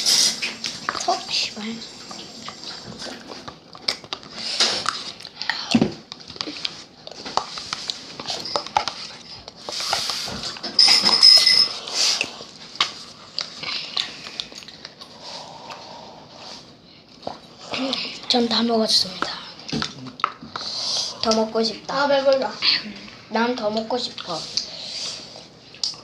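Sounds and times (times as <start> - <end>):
bowl and utensils clattering: 10.3 - 11.8.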